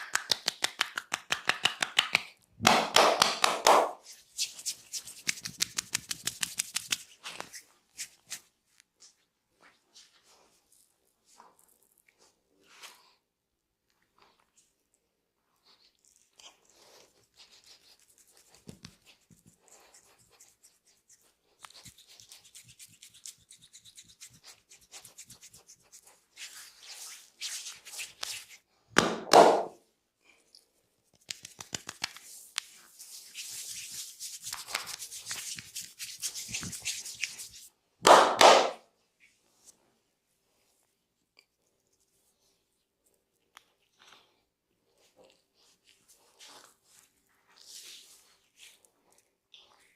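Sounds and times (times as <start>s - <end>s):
hands rubbing skin and hair: 0.0s - 13.1s, 16.4s - 29.8s, 31.0s - 38.8s, 45.6s - 48.8s.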